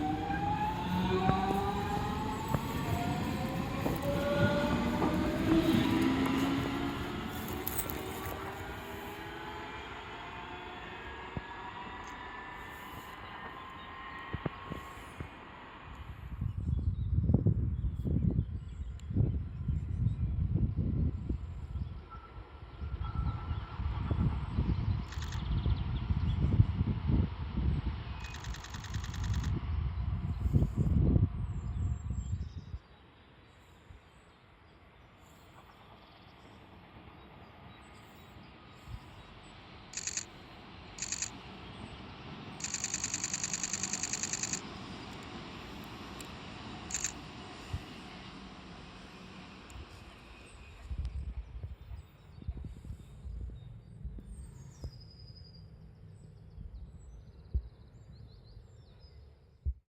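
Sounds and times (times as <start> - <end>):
faint bird chirps: 39.9 - 40.3, 41.0 - 41.3, 42.6 - 44.6.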